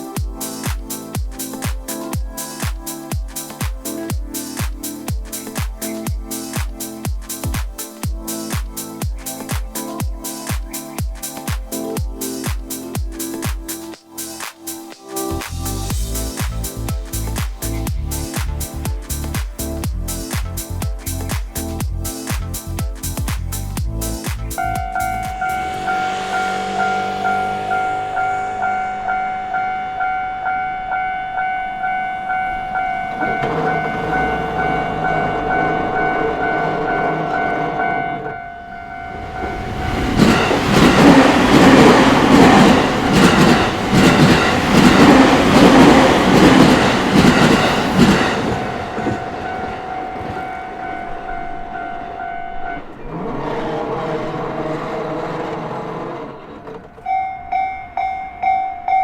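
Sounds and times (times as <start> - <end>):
train passing with clattering wheels: 0.0 - 59.0
lower steady tone: 23.8 - 40.5
level-crossing alarm ringing: 24.6 - 53.0, 56.9 - 59.0.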